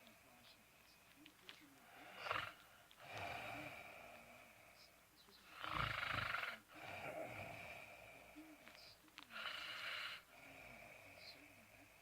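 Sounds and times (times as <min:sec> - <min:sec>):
dog snoring: 0:02.1 - 0:03.9, 0:05.5 - 0:08.0, 0:09.3 - 0:11.1.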